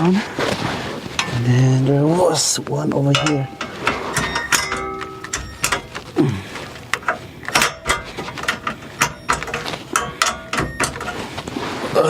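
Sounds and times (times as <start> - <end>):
metallic clicks of hand tools: 1.2 - 1.5, 3.1 - 6.1, 6.9 - 11.2.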